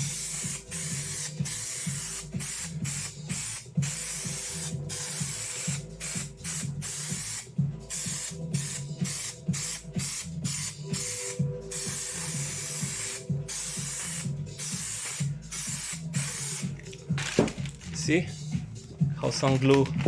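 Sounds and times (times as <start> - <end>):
aerosol can spraying: 0.0 - 16.8
background music: 0.0 - 20.0.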